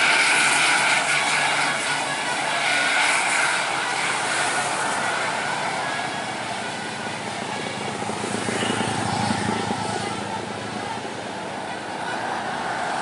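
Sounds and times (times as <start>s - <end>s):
large vehicle passing: 0.0s - 13.0s.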